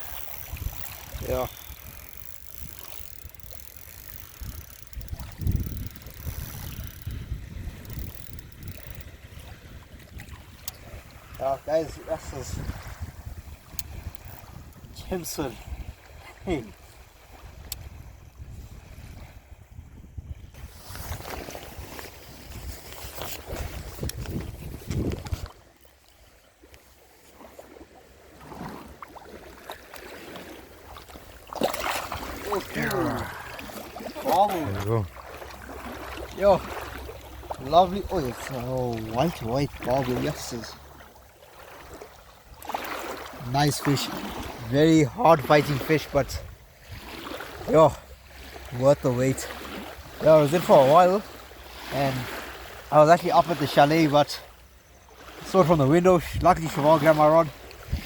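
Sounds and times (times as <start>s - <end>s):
faint clicks: 0.0s - 7.2s, 7.8s - 9.1s
wind buffeting microphone: 0.0s - 25.7s, 57.8s - 58.0s.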